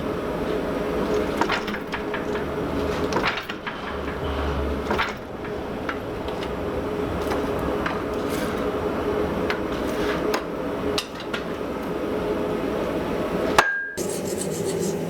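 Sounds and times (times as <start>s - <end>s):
hammer striking hot steel: 13.6s - 14.0s
steady hum: 14.0s - 15.0s.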